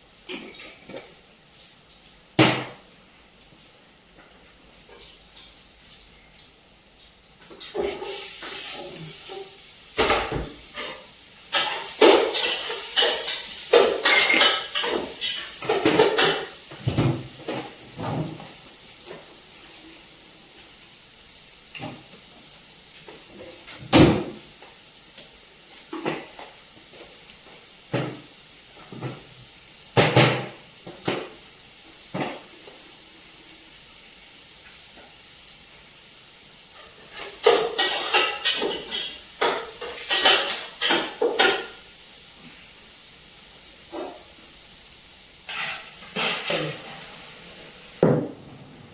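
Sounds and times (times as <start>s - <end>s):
metal utensils clattering in a pot: 7.5s - 18.4s, 36.8s - 41.8s, 45.5s - 47.2s.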